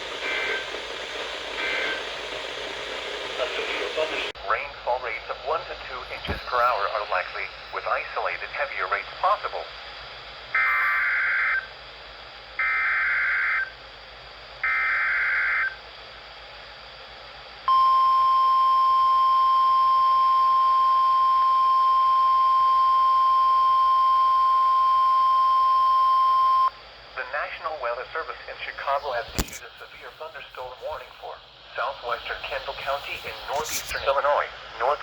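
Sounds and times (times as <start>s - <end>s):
steady alarm tone: 0.0s - 4.3s, 12.6s - 13.7s, 14.6s - 15.8s, 17.7s - 26.8s.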